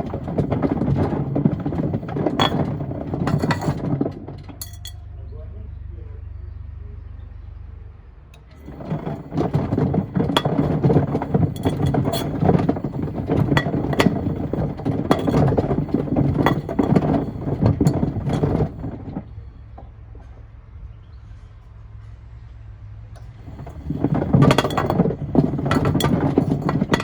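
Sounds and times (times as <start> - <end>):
stones and wood tumbling in drum: 0.0 - 5.0, 8.4 - 20.3, 23.2 - 27.0.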